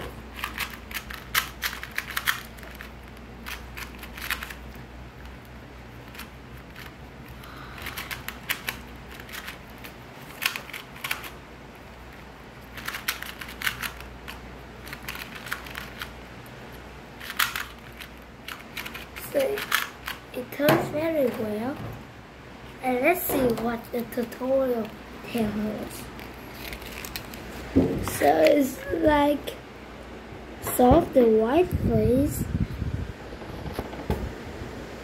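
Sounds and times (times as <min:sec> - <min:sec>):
puzzle cube clicking: 0:00.4 - 0:04.6, 0:17.2 - 0:20.2.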